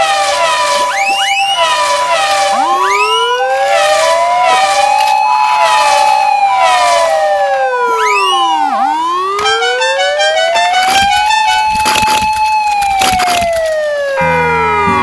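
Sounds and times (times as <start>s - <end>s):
rising siren whoops: 0.0s - 15.0s
two-tone ambulance siren: 0.0s - 15.0s
wailing siren: 0.0s - 15.0s.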